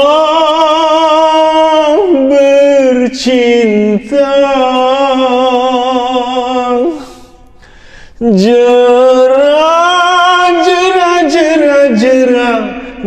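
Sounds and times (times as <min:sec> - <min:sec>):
man singing long notes: 0:08.2 - 0:13.0.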